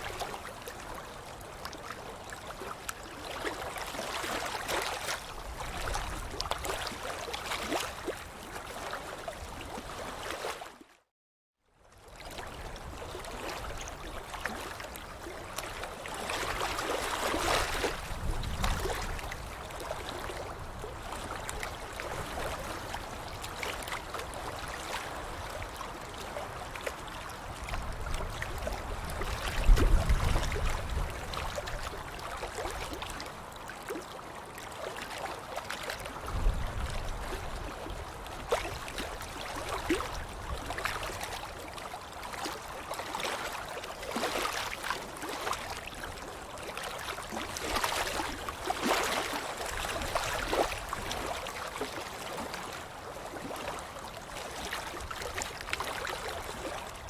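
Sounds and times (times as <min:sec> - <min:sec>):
water sloshing and splashing: 0:00.0 - 0:11.1, 0:12.0 - 0:57.0.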